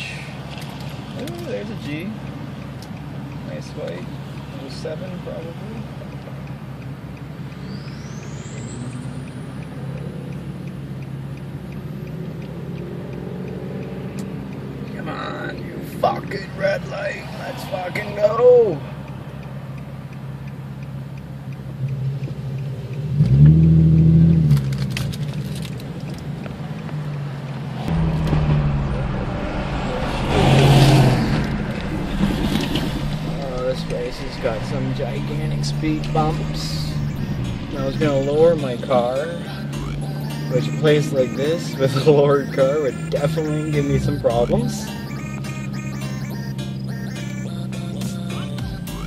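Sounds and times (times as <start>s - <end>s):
car engine drone inside cabin: 1.2s - 49.0s
faint high whine: 27.9s - 39.2s.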